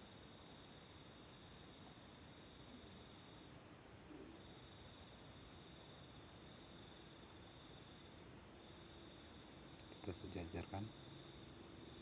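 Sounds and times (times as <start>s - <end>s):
faint steady hiss: 0.0s - 12.0s.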